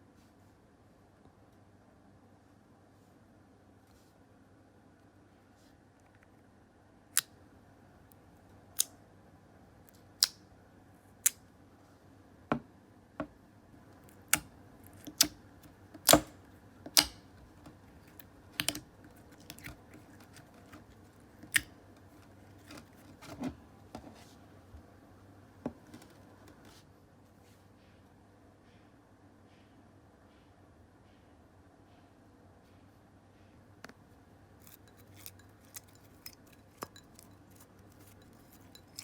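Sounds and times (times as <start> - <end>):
slime clicking and popping: 14.1 - 15.4, 16.9 - 17.2.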